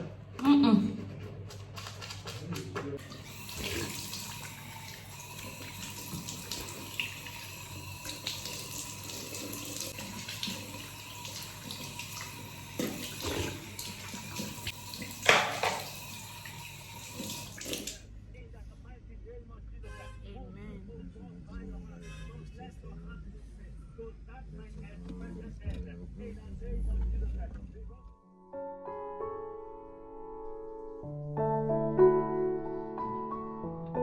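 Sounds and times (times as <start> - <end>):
water running: 0.6 - 18.1.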